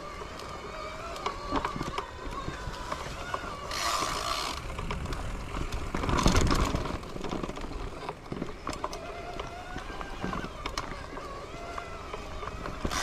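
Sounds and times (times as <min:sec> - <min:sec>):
bicycle road rumble: 0:00.0 - 0:13.0
wind on microphone: 0:00.7 - 0:08.6.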